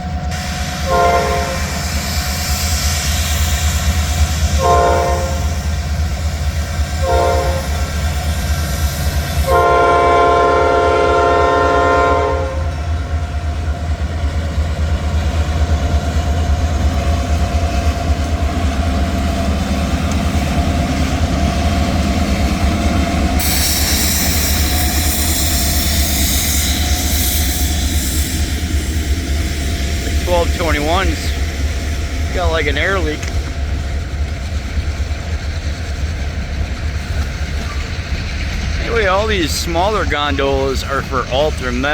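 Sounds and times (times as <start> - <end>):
low rumble of passing train: 0.0 - 41.9
high hiss: 0.4 - 4.6
locomotive horn blasts: 0.8 - 1.8, 4.6 - 5.6, 7.0 - 7.8, 9.4 - 12.9.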